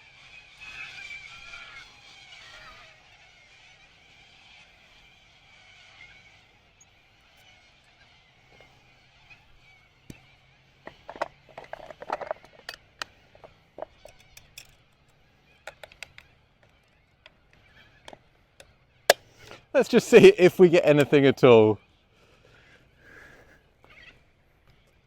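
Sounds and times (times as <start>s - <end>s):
faint birdsong: 0.0s - 25.0s
clicks and knocks of handling tools: 10.8s - 19.6s.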